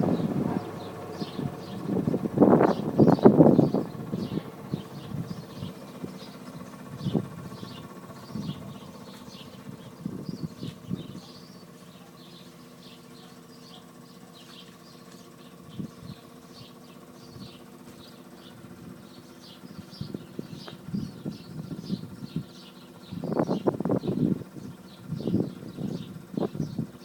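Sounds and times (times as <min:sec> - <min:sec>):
electric motor humming: 0:00.0 - 0:12.6.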